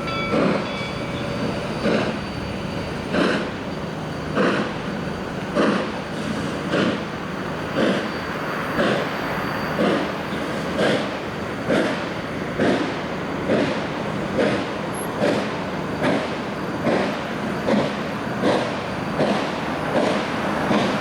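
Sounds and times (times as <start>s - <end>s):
steam locomotive exhaust chuffing: 0.0s - 21.0s.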